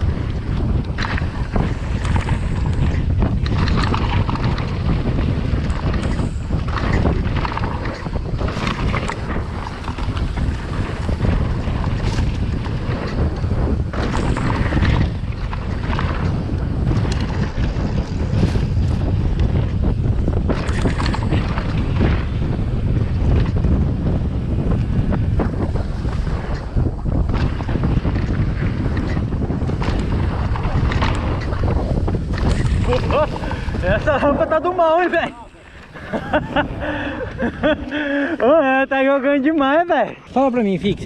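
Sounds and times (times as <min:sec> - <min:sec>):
bike knocking and rattling: 0:00.0 - 0:37.8
wind buffeting microphone: 0:00.0 - 0:41.0
tyres rumbling on dirt: 0:19.9 - 0:39.0.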